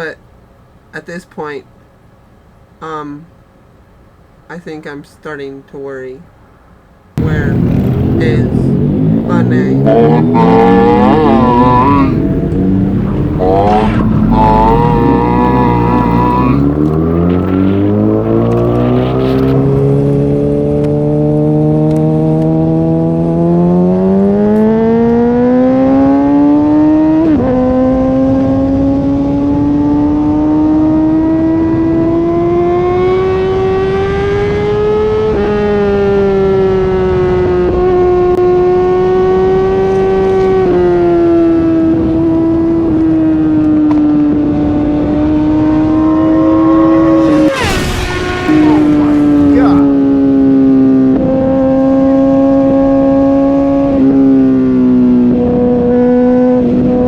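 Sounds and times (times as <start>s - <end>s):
motorcycle engine revving high: 7.2s - 57.0s
wind rush: 7.3s - 21.7s.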